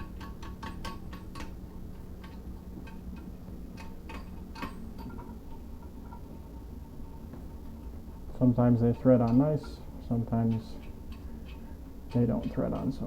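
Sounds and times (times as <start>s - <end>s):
nut and washer clicking: 0.0s - 1.6s, 2.2s - 5.3s.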